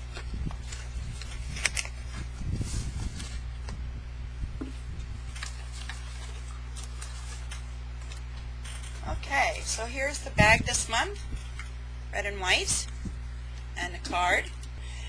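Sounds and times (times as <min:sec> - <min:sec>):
package handling noise: 0:00.0 - 0:03.8, 0:04.6 - 0:09.1
desk fan humming: 0:00.0 - 0:15.0.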